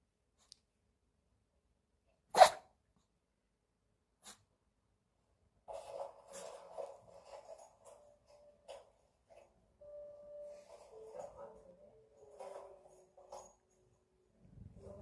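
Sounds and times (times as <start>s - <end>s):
dog sneezing: 2.3s - 2.7s
soft continuous sound: 2.9s - 15.0s.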